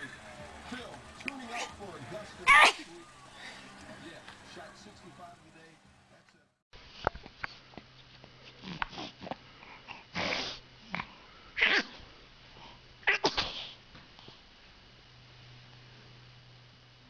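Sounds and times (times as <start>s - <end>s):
baby sneezing: 2.5s - 2.8s, 13.1s - 13.8s.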